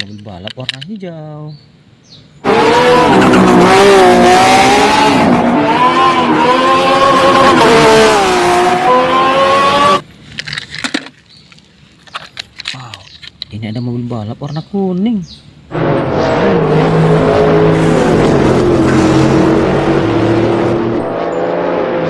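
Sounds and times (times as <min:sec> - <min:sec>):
race car engine: 0:02.4 - 0:10.1, 0:15.7 - 0:22.0.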